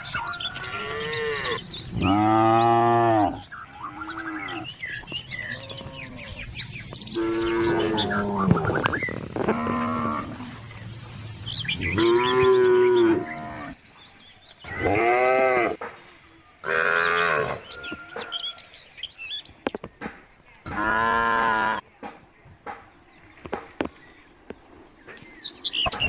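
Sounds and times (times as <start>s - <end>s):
cows mooing: 0.2s - 6.5s, 7.1s - 10.6s, 11.8s - 13.8s, 14.7s - 15.8s, 16.6s - 17.8s, 20.7s - 21.8s.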